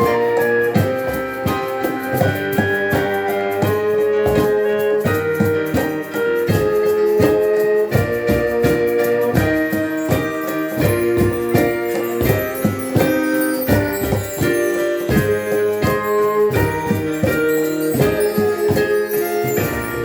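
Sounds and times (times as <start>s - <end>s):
hand-drum beat: 0.0s - 20.0s
piano: 0.0s - 20.0s.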